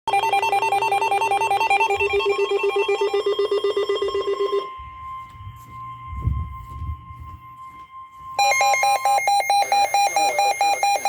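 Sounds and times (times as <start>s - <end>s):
pulsing electronic alert warble: 0.1s - 7.6s, 8.3s - 11.0s
steady alert tone: 0.1s - 11.0s.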